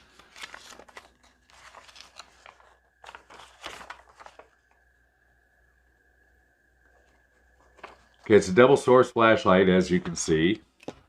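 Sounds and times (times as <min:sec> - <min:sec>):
paper booklet rustling: 0:00.0 - 0:04.9, 0:06.9 - 0:08.8.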